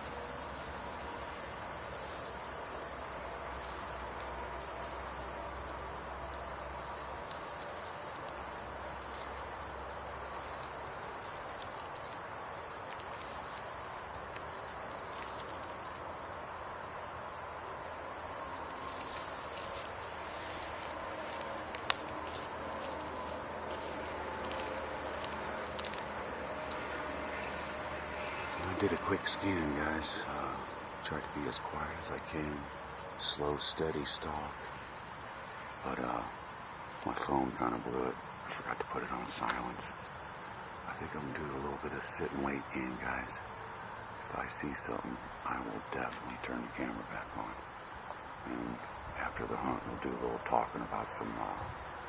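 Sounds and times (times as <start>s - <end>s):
chorus of insects: 0.0s - 52.0s
faint ticks: 7.2s - 9.4s, 14.3s - 15.6s, 18.8s - 26.1s.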